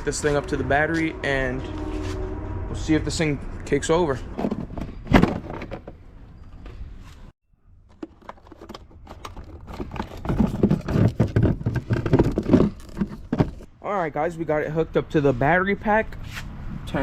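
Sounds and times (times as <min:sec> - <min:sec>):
handling knocks and clicks: 0:04.3 - 0:06.8, 0:07.8 - 0:13.7
clattering and rustling: 0:04.3 - 0:13.7.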